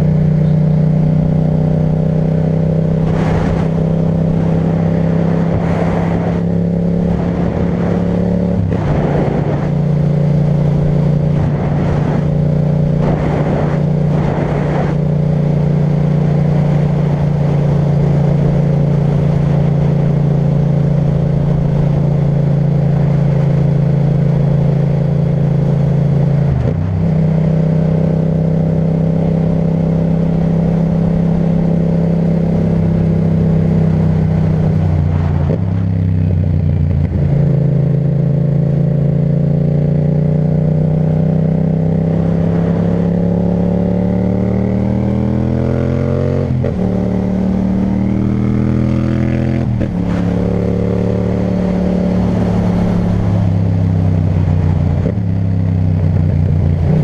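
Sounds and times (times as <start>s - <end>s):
motorcycle engine running: 0.0s - 57.0s
wind gusts on microphone: 2.7s - 22.3s.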